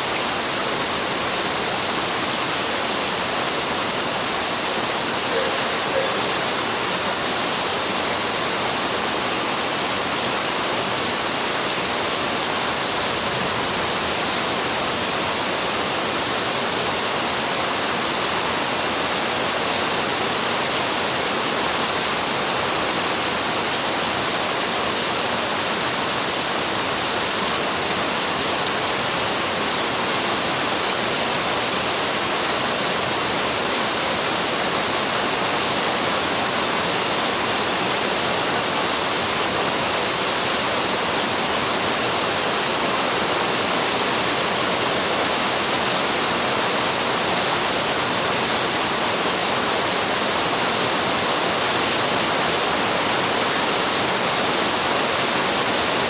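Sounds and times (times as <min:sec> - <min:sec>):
heavy rain hiss: 0:00.0 - 0:56.0.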